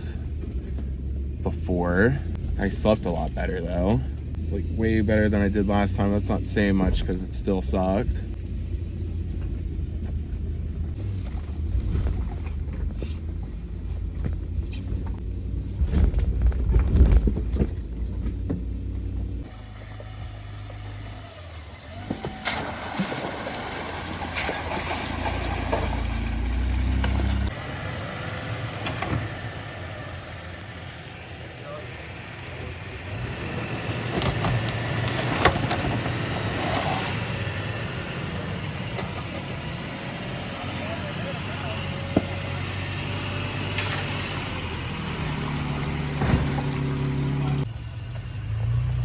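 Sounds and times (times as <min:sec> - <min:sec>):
off-road vehicle rumbling: 0:00.0 - 0:49.0
knocks and rattles: 0:10.9 - 0:19.5.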